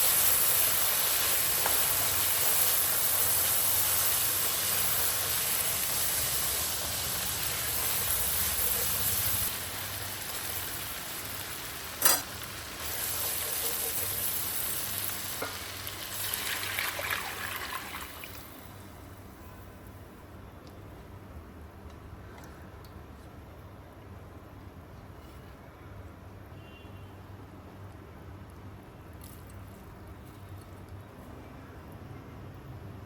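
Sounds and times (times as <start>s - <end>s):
food sizzling in hot oil: 0.0s - 18.9s.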